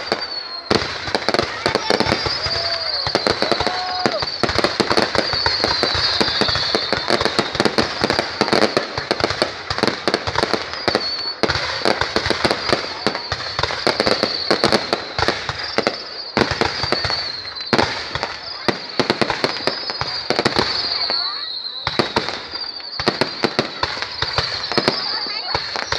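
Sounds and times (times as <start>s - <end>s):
high wavering whistle: 0.0s - 8.0s, 19.5s - 25.9s
fireworks cracking and popping: 0.0s - 25.9s.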